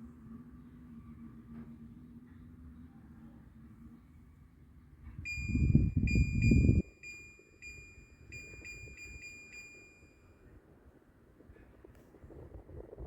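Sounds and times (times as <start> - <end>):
high electronic beep tone: 5.3 - 10.2.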